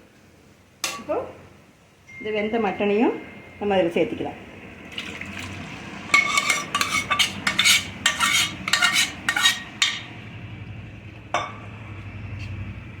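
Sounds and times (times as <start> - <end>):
spoon scraping a pan: 5.0 - 10.2.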